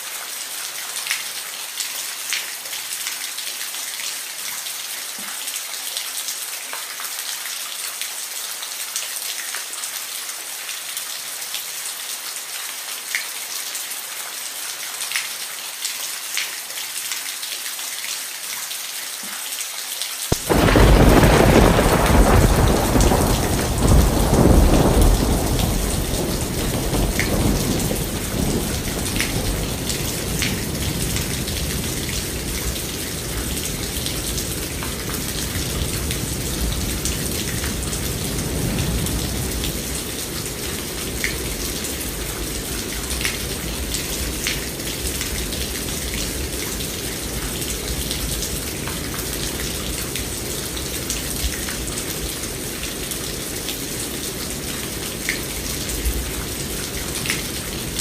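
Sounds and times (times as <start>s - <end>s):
steady rain falling: 0.0s - 58.0s
thunder clap and rumble: 20.3s - 46.5s.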